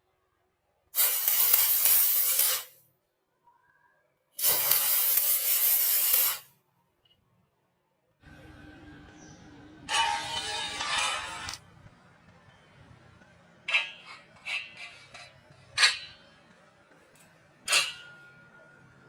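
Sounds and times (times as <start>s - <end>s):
loud hissing spray bursts: 1.0s - 2.8s, 4.4s - 6.5s.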